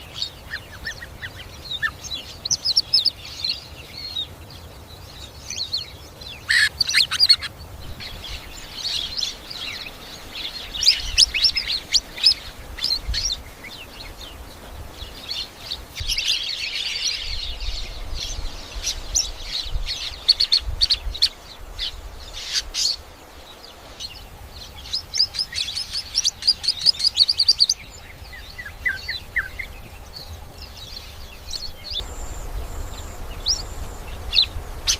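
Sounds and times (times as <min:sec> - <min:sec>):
birds chirping and chattering: 0:00.0 - 0:34.9.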